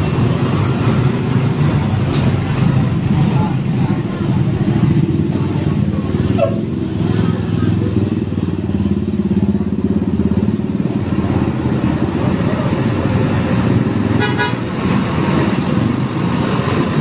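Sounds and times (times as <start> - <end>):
vehicle engine running: 0.0 - 17.0
horn toot: 14.2 - 14.6.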